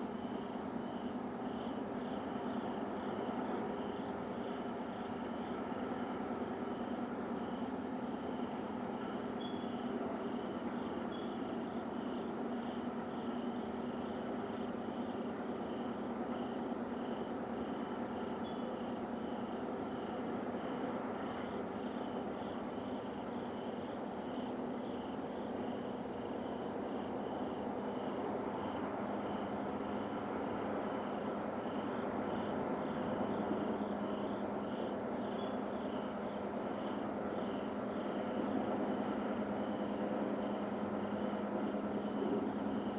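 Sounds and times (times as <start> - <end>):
faint high chirp: 9.4 - 9.8.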